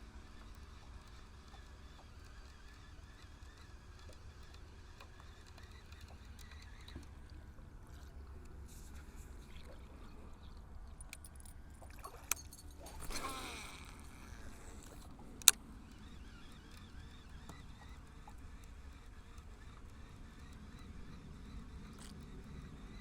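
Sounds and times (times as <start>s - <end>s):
fishing reel clicks: 11.0s - 20.9s
fishing line whirring sweep: 12.0s - 18.9s.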